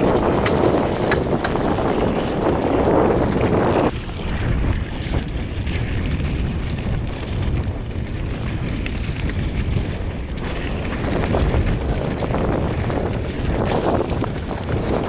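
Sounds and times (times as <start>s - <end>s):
bike knocks and rattles: 0.0s - 3.9s, 4.9s - 15.0s
wind buffeting microphone: 0.0s - 15.0s.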